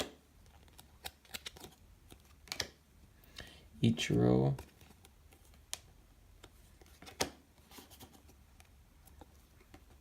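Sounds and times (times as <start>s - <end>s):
light rustling of cards: 4.1s - 10.0s.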